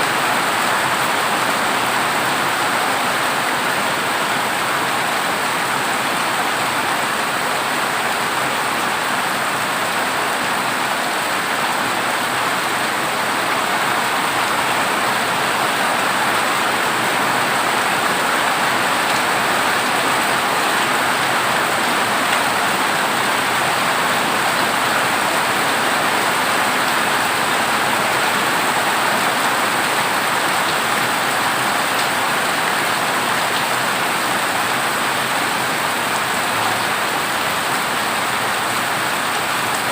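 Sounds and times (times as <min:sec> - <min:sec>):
heavy rain on a metal roof: 0:00.0 - 0:39.9.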